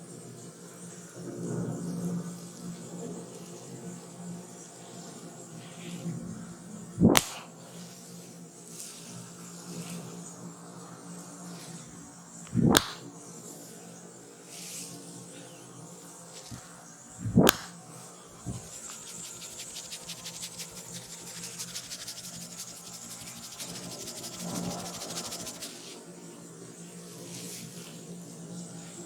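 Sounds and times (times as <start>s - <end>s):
sharp hit against body: 7.0s - 7.5s, 12.5s - 13.1s, 17.2s - 17.8s
rapid tapping on head: 17.5s - 17.7s, 18.5s - 26.0s.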